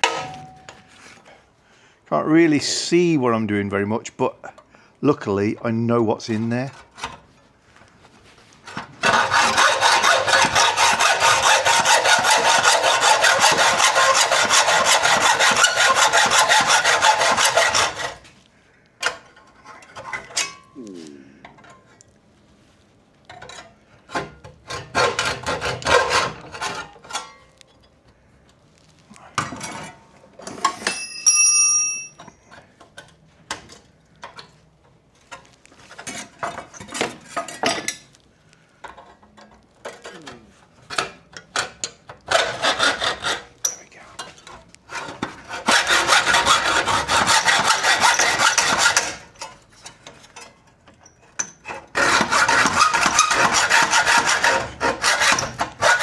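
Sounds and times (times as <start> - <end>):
metal ringing clang: 0.0 - 0.8, 30.8 - 32.3
hacksaw sawing through steel: 8.7 - 18.2, 24.7 - 27.0, 42.3 - 43.6, 44.9 - 50.2, 51.4 - 56.0.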